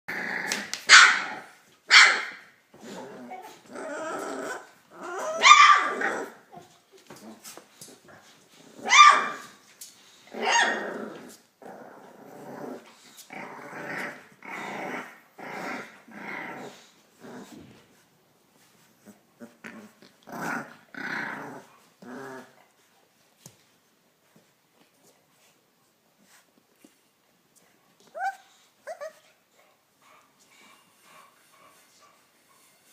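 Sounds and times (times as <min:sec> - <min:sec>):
puppies growling: 0:00.1 - 0:01.6, 0:02.7 - 0:08.9, 0:10.3 - 0:18.0, 0:18.9 - 0:22.8.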